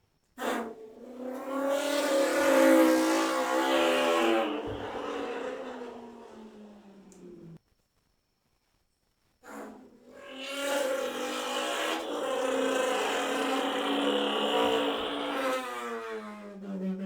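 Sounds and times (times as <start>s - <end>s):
car engine revving: 1.4s - 7.6s, 11.2s - 16.0s.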